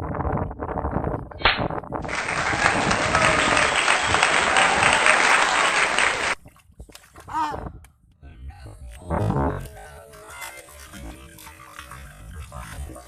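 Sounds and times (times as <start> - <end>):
applause: 2.0 - 6.4.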